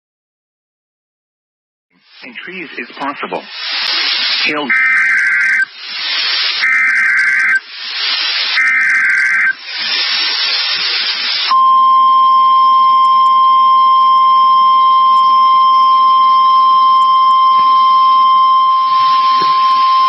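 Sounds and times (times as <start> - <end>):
static hiss: 2.0 - 11.7, 14.1 - 20.0
warbling digital data screech: 3.9 - 10.0
steady warning alarm tone: 4.6 - 5.7, 6.6 - 7.7, 8.5 - 9.6, 11.5 - 20.0.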